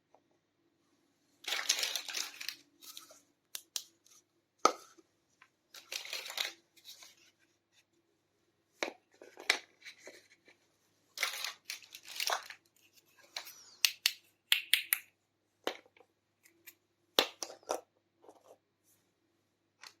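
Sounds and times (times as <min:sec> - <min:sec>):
rustles and scrapes: 0:01.4 - 0:03.3, 0:05.7 - 0:08.0, 0:09.0 - 0:13.8.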